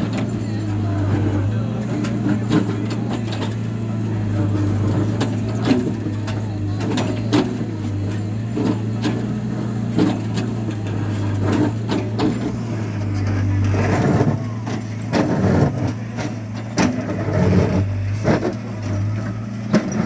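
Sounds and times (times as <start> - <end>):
machine engine running: 0.0 - 20.0
knocks and clatter: 4.5 - 20.0.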